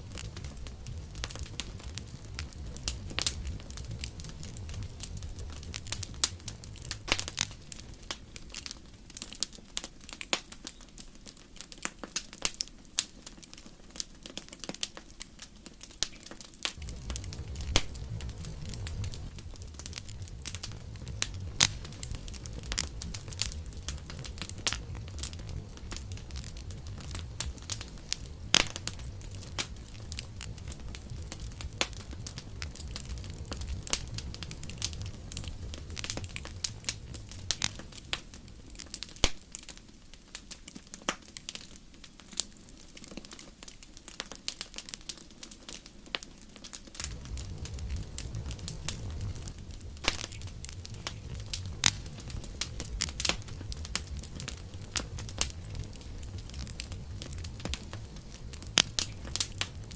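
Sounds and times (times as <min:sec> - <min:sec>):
low rumble: 0:00.0 - 0:08.0, 0:16.8 - 0:38.8, 0:47.0 - 0:59.9
campfire crackling and popping: 0:00.0 - 0:59.9.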